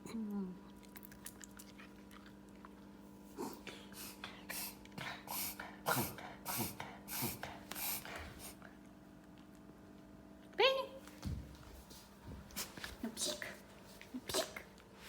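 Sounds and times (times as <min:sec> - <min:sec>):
dog sneezing: 0:03.5 - 0:08.5, 0:14.2 - 0:14.7.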